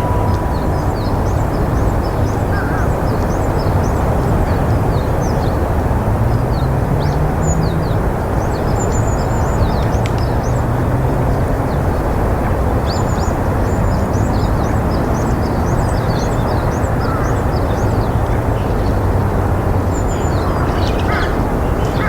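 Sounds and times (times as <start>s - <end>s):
loud low rumble: 0.0s - 2.5s.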